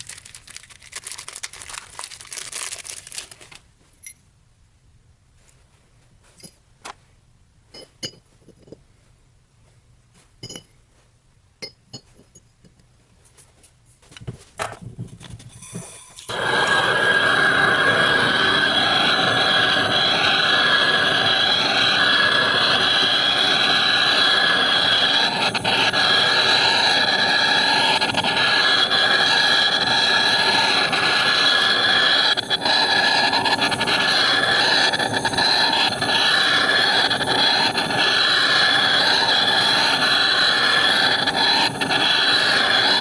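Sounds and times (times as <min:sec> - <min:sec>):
heat gun blowing with whine: 0:15.4 - 0:43.0.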